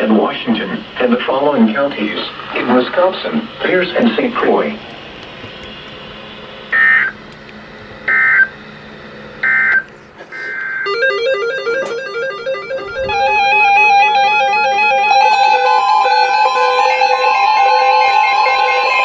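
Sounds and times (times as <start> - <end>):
buzzy digital data bursts: 0.0 - 4.9, 6.6 - 7.3, 10.8 - 19.0
instrumental music: 10.9 - 19.0.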